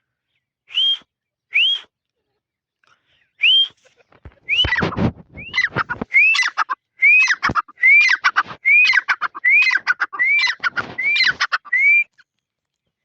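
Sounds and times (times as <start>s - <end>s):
francolin calling: 4.5s - 12.0s.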